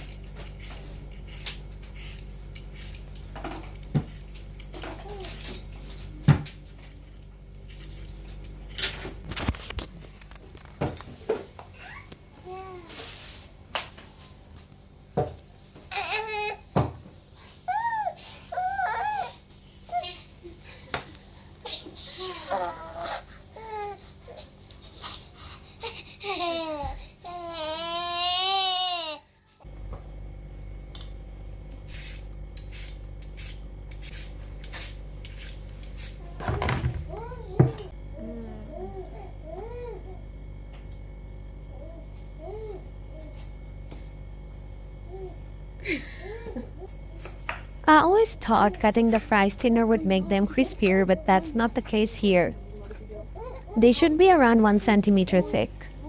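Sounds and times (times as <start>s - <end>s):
steady low hum: 29.2s - 56.0s.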